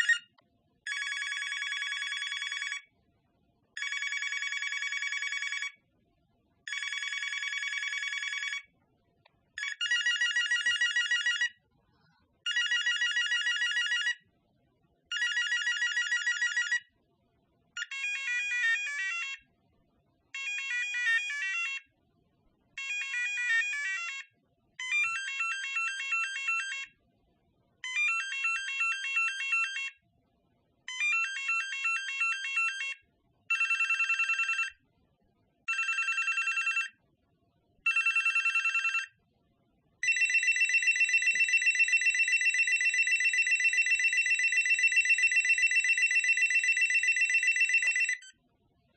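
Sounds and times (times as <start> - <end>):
telephone ringing: 0.0 - 0.3, 0.9 - 2.9, 3.8 - 5.8, 6.7 - 8.7, 9.6 - 11.6, 12.5 - 14.2, 15.1 - 16.9, 17.8 - 19.5, 20.4 - 21.9, 22.8 - 27.0, 27.8 - 30.0, 30.9 - 34.8, 35.7 - 37.0, 37.9 - 39.2, 40.0 - 48.4.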